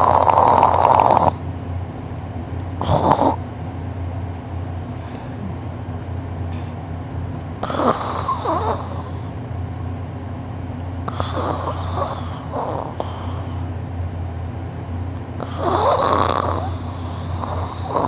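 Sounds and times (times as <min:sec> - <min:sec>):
person snoring: 0:00.0 - 0:01.4, 0:02.8 - 0:03.4, 0:07.6 - 0:09.2, 0:11.1 - 0:13.6, 0:15.4 - 0:18.0
steady low hum: 0:00.0 - 0:18.0.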